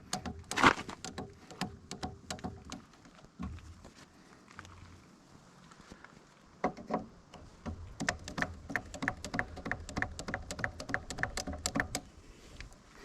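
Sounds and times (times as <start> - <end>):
grease gun clicking: 7.4 - 12.1.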